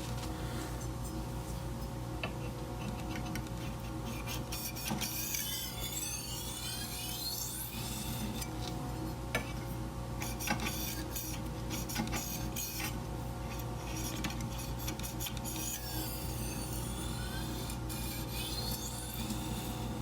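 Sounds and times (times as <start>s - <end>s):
steady low hum: 0.0s - 20.0s
knife scraping sharpening stone: 4.0s - 8.5s, 10.2s - 20.0s.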